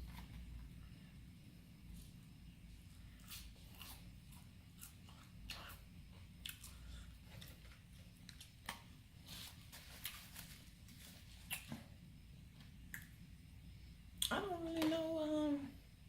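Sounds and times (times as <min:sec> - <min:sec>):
chewing: 0:06.4 - 0:08.9.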